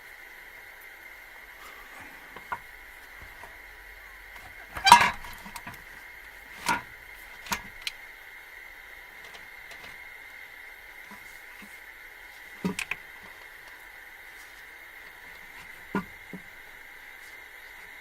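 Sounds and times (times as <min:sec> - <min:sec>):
faint high-pitched hum: 0:00.0 - 0:18.0
knocks and clicks on engine: 0:12.6 - 0:13.0.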